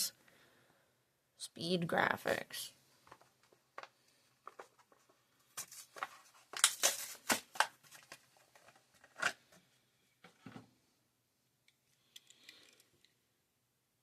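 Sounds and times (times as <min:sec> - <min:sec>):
blister package tearing and crinkling: 0:05.6 - 0:09.4.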